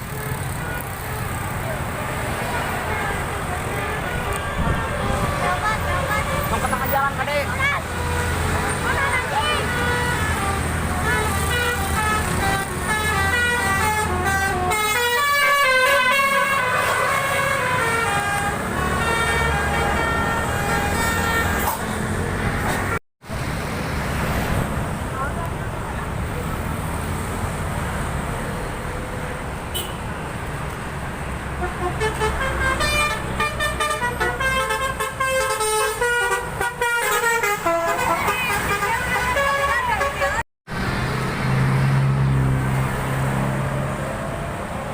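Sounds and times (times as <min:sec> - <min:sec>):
bus engine rumbling: 0:00.0 - 0:44.9
bus horn playing tune: 0:02.4 - 0:06.7, 0:07.8 - 0:22.1, 0:29.7 - 0:30.0, 0:31.5 - 0:40.4.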